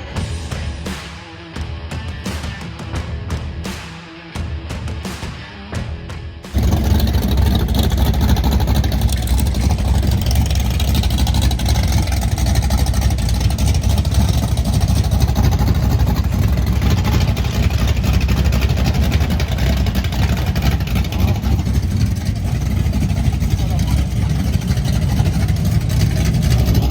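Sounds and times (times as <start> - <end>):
drag racing car engine running: 6.4 - 26.9.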